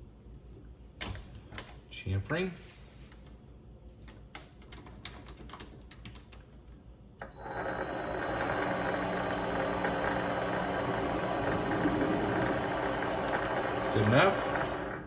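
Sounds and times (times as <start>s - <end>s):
metal lathe motor whine: 7.2s - 15.0s.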